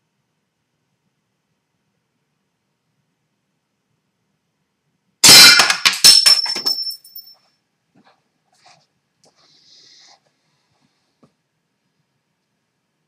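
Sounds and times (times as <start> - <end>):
clattering with metallic ring: 5.2 - 7.4.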